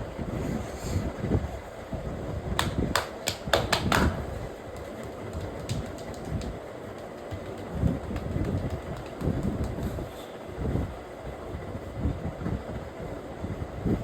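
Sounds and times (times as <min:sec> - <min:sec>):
steady low rumble: 0:00.0 - 0:14.0
hands clicking and slapping on head: 0:02.6 - 0:10.1.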